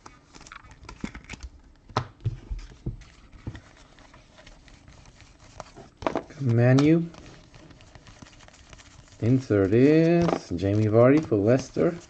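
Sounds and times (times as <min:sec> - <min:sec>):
trading cards clicking and tapping: 0:06.0 - 0:07.2, 0:09.8 - 0:12.0.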